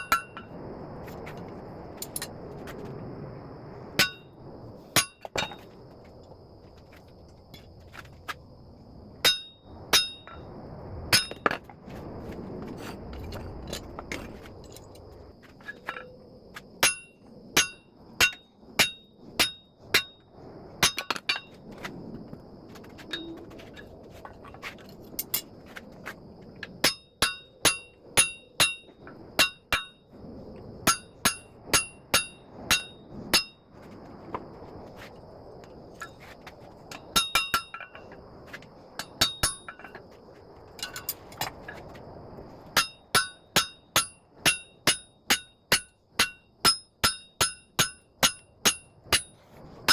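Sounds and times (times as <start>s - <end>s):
hammer striking hot steel on anvil: 0.0s - 0.5s, 4.0s - 4.3s, 5.0s - 5.5s, 9.2s - 10.4s, 11.1s - 11.5s, 16.8s - 20.2s, 20.8s - 21.5s, 26.8s - 30.0s, 30.8s - 33.6s, 37.1s - 38.0s, 39.0s - 39.8s, 42.8s - 49.9s.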